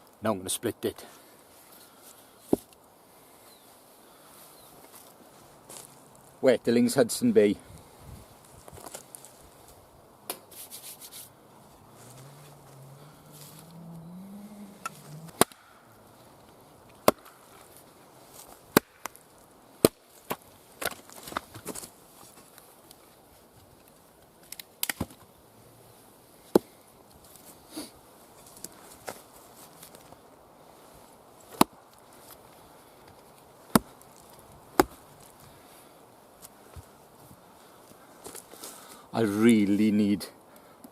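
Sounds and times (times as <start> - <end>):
faint low hum: 11.1 - 18.3
axe chopping wood: 14.8 - 15.7, 17.0 - 17.4, 18.7 - 19.2, 19.8 - 21.8, 26.5 - 26.7, 31.5 - 31.8, 33.7 - 34.0, 34.7 - 35.0.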